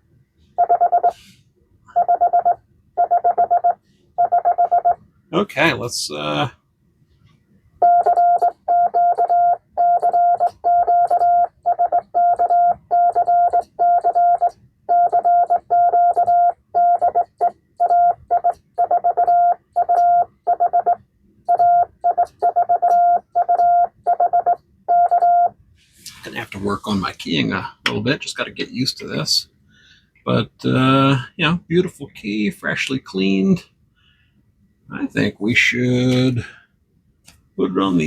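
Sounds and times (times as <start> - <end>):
morse code beeping: 0.6 - 1.2, 1.9 - 5.0, 7.8 - 25.6.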